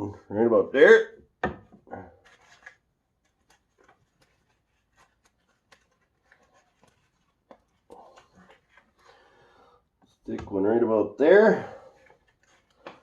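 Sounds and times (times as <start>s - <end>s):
hands handling adhesive pads: 2.2s - 9.1s, 11.9s - 13.0s.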